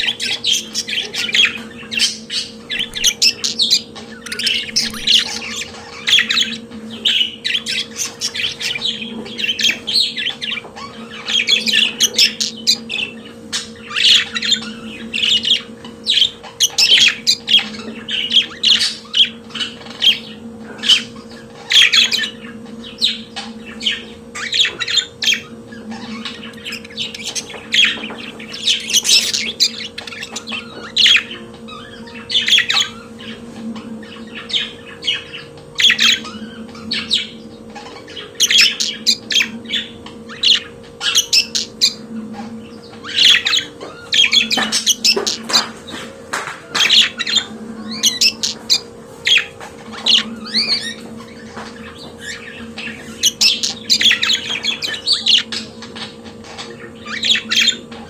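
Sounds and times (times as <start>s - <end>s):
budgerigars chattering and warbling: 0.0s - 58.0s
steady low hum: 0.0s - 58.0s.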